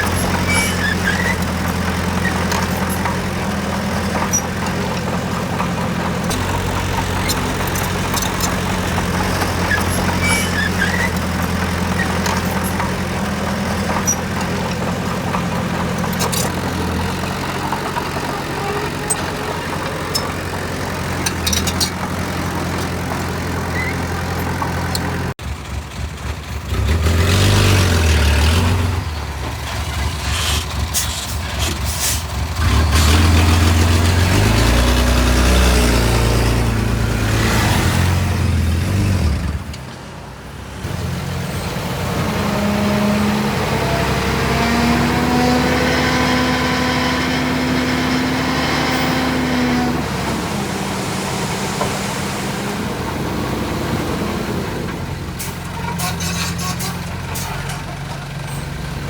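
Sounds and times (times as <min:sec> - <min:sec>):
diesel engine running: 0:00.0 - 0:59.0
engine revving: 0:26.5 - 0:39.7, 0:40.8 - 0:55.4.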